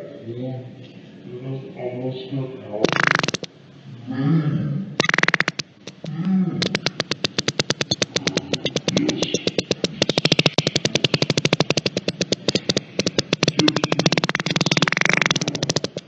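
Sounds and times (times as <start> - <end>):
rattling fart: 2.9 - 3.5, 5.0 - 5.7, 6.6 - 16.0.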